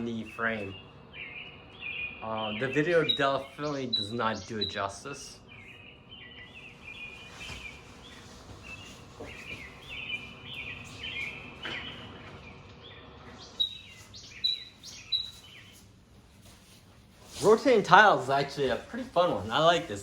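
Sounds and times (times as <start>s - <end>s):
high whistled bird notes: 0.0s - 15.8s
birds chirping: 0.0s - 20.0s.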